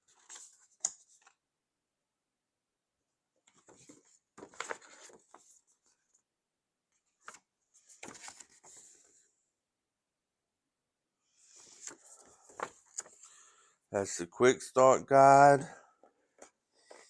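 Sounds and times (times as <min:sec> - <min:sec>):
paper leaflet rustling: 0:03.5 - 0:06.0, 0:07.1 - 0:09.2, 0:11.5 - 0:13.4.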